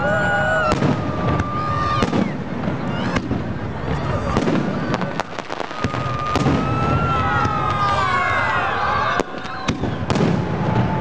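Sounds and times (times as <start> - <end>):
whistling fireworks: 0.0 - 11.0
firework bangs: 0.2 - 11.0.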